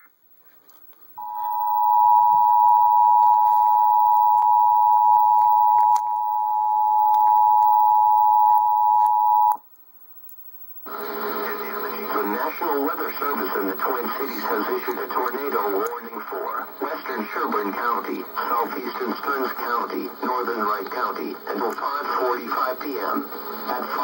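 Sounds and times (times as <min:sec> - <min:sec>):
two-tone alert alarm: 0:01.2 - 0:09.6.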